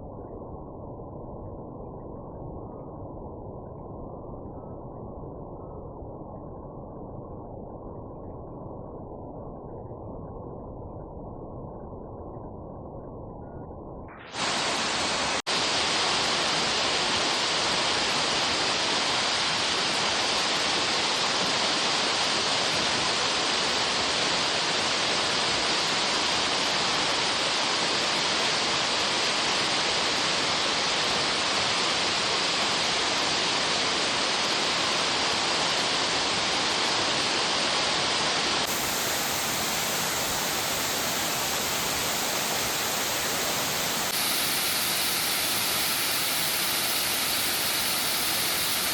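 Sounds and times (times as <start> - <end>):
waterfall rushing: 14.3 - 25.1, 31.0 - 48.9.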